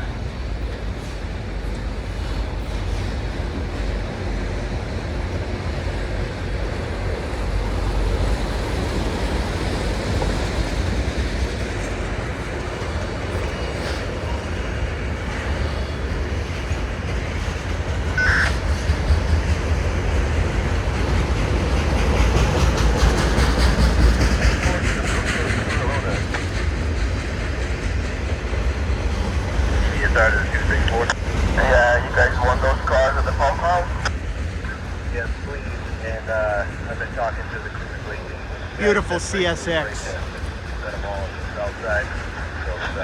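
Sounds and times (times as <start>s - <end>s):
clickety-clack over rail joints: 0.0s - 43.0s
train wheels rumbling on rails: 0.0s - 43.0s.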